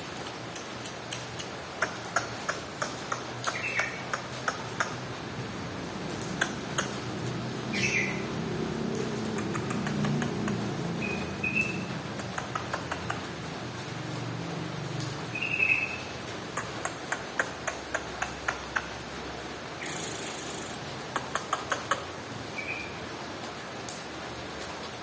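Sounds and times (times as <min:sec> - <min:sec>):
sharp clicking ticks: 0:00.2 - 0:05.1, 0:06.2 - 0:07.2, 0:08.9 - 0:13.5, 0:16.3 - 0:19.1, 0:19.8 - 0:22.1
bird chirping: 0:01.8 - 0:05.0, 0:07.7 - 0:08.3, 0:11.0 - 0:12.5, 0:15.3 - 0:18.5, 0:19.8 - 0:20.8, 0:22.6 - 0:23.0.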